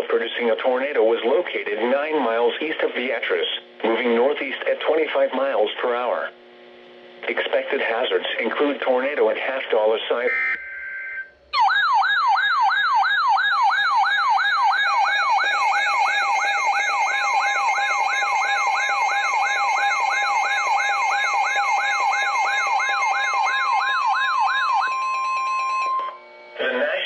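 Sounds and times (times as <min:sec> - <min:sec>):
electronic siren alert tone: 0:10.2 - 0:26.6.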